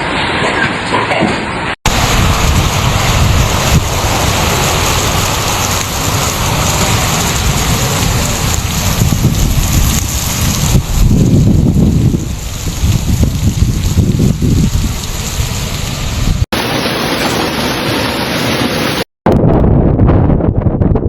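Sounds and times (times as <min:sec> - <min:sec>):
heavy rain downpour: 0:01.8 - 0:19.1
wind buffeting microphone: 0:01.9 - 0:16.5, 0:19.3 - 0:21.0
deep rumble: 0:01.9 - 0:16.6, 0:19.3 - 0:21.0.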